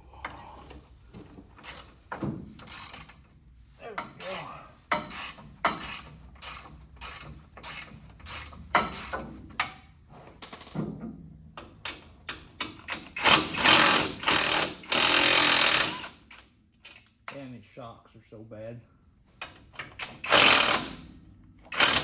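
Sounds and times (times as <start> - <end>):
ratchet wrench clicking: 2.6 - 3.2, 4.9 - 9.2, 12.8 - 16.4, 19.8 - 21.0, 21.7 - 22.0.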